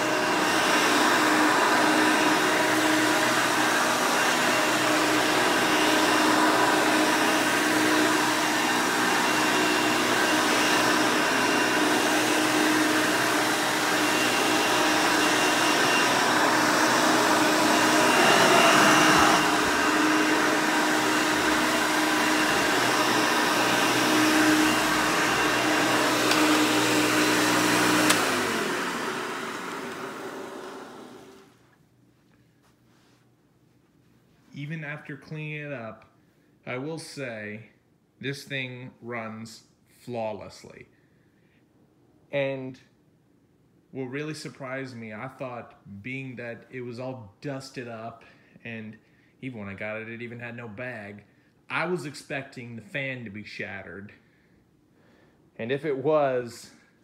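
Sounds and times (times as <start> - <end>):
vacuum cleaner motor humming: 0.0 - 31.6
vacuum motor winding down: 0.0 - 31.6.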